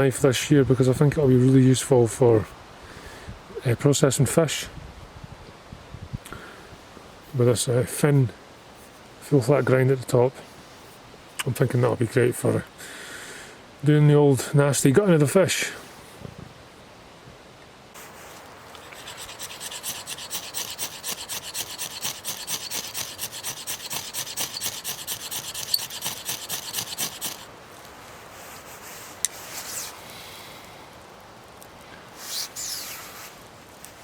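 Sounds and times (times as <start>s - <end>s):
knife scraping wood: 18.0s - 27.5s.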